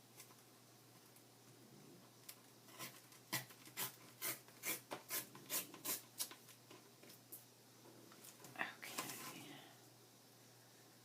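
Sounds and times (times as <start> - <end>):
scraping strokes on paper: 3.8 - 6.0.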